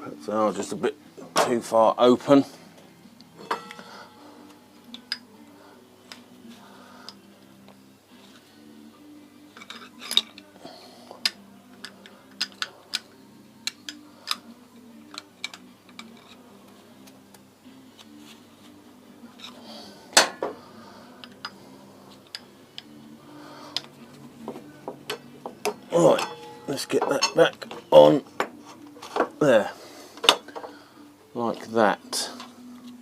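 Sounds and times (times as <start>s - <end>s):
metal parts and tools clinking: 3.4s - 3.9s, 9.5s - 10.5s, 11.2s - 13.1s, 13.7s - 16.5s, 25.1s - 29.4s.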